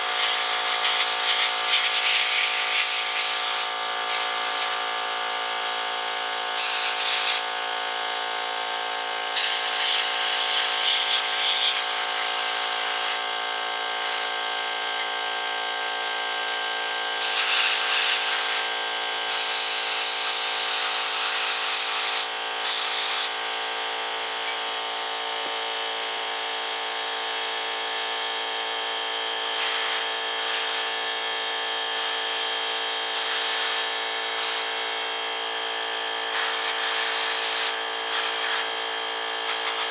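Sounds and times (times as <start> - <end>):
air compressor running: 0.0 - 39.9
sandblaster gun hissing: 29.5 - 31.0, 33.2 - 34.7, 36.3 - 38.7, 39.5 - 39.9.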